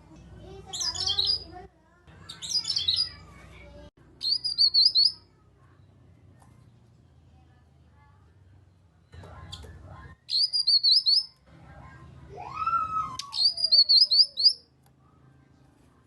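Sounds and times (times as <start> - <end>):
bird chirping: 0.6 - 1.6, 2.2 - 3.4, 4.2 - 6.0, 8.7 - 11.4, 13.1 - 14.7.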